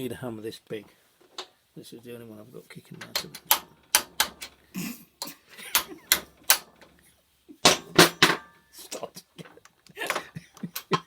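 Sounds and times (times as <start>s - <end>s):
hammer striking metal: 7.6s - 8.6s.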